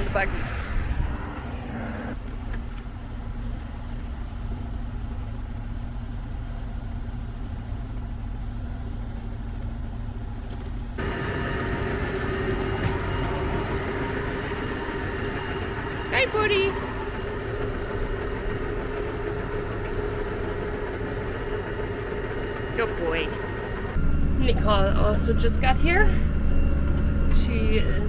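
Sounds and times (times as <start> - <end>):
steady whine: 11.0 - 28.0
tractor engine running: 11.0 - 28.0.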